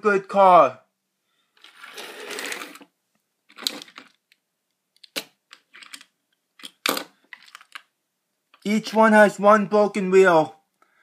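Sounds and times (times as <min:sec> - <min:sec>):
toy cars scraping on hard surface: 0:01.6 - 0:02.9
toy cars clicking and rattling: 0:03.5 - 0:04.4, 0:05.0 - 0:07.9.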